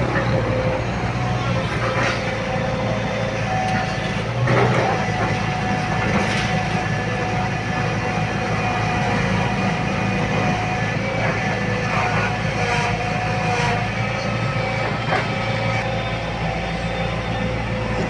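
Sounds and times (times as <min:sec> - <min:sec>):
excavator diesel engine running: 0:00.0 - 0:18.0
hydraulic whine: 0:00.0 - 0:18.0.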